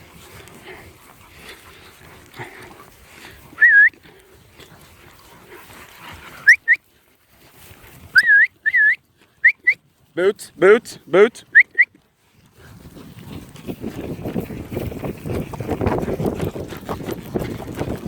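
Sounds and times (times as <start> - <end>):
herding whistles: 3.6 - 4.0, 6.4 - 6.8, 8.1 - 9.8, 11.5 - 11.9.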